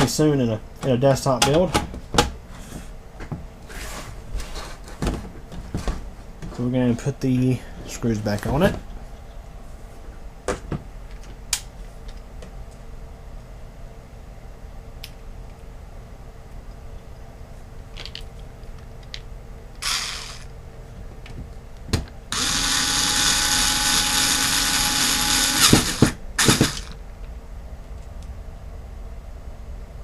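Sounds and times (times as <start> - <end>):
electric screwdriver whine: 19.8 - 20.5, 22.3 - 27.0.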